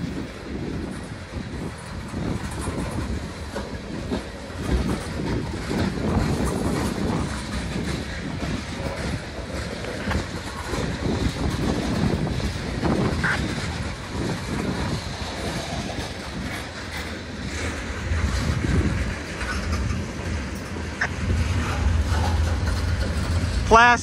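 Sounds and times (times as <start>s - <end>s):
freight train rolling past: 0.0s - 24.0s.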